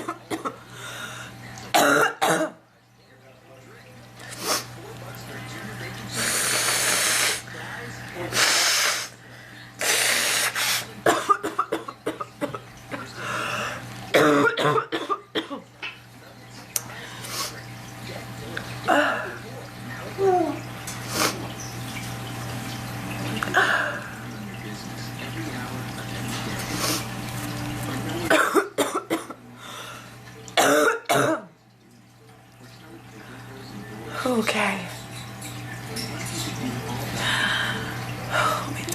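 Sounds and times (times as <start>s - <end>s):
woman coughing: 1.7s - 2.6s, 11.0s - 12.6s, 14.2s - 15.6s, 28.3s - 29.4s, 30.6s - 31.5s.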